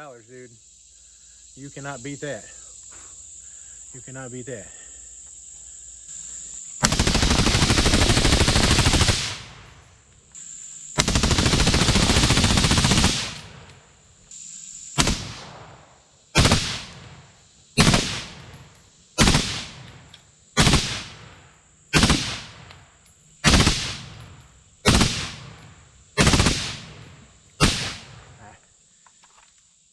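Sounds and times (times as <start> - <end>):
insects shrilling: 0.0 - 29.9
rifle firing rapid shots: 6.8 - 9.7, 11.0 - 13.7, 15.0 - 15.8, 16.4 - 17.1, 17.8 - 18.6, 19.2 - 19.9, 20.6 - 21.2, 22.0 - 22.6, 23.4 - 24.2, 24.9 - 25.6, 26.2 - 27.0, 27.6 - 28.2.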